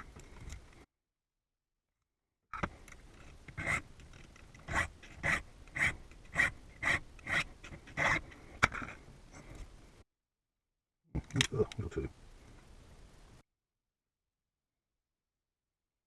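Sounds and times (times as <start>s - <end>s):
file rasping on metal: 3.6s - 3.8s, 4.6s - 8.3s.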